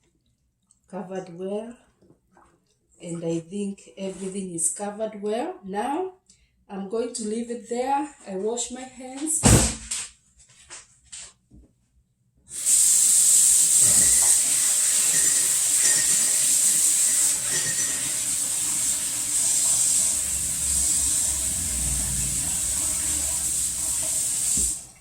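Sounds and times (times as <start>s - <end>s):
hands washing under tap: 12.5s - 25.0s
tap water running into sink: 12.5s - 25.0s.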